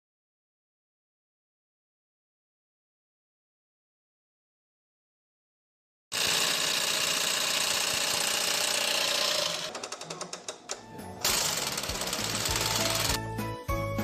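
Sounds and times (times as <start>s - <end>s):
sewing machine running: 6.1s - 13.2s.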